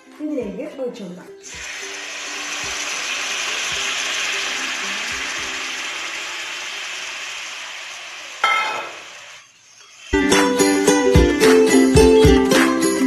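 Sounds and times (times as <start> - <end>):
liquid sizzling in hot oil: 1.4 - 10.4.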